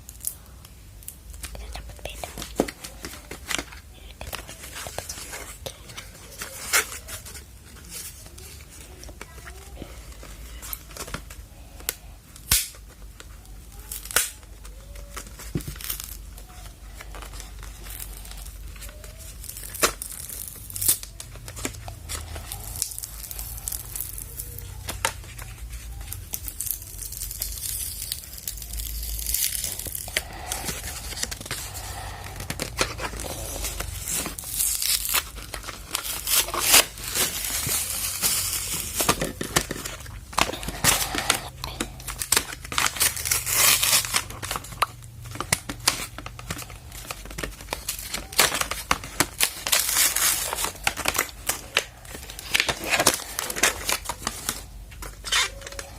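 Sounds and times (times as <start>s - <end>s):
packaging tearing and crinkling: 0.0s - 55.9s.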